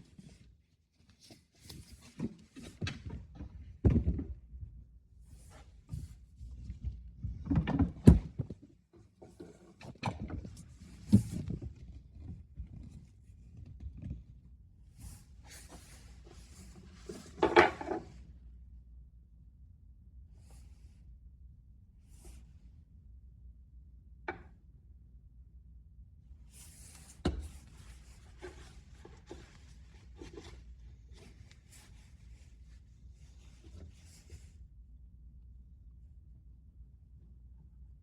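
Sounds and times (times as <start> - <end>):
knocks and clatter of fan handled: 6.0 - 12.9.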